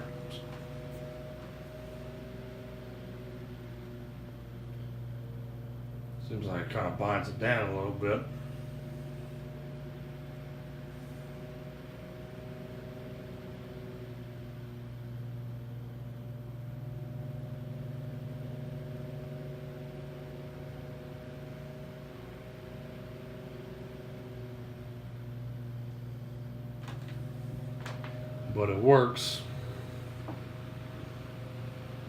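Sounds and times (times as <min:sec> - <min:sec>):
table fan motor hum: 0:00.0 - 0:32.0.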